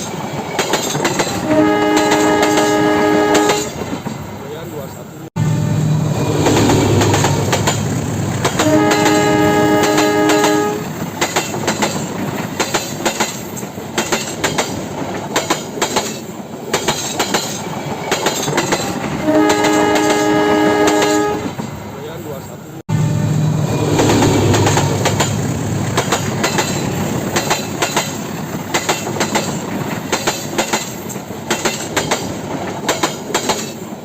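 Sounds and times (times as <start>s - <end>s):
locomotive rumbling: 0.0s - 15.8s, 17.2s - 30.4s
multi-note train horn: 1.4s - 3.8s, 8.6s - 11.0s, 19.2s - 21.6s.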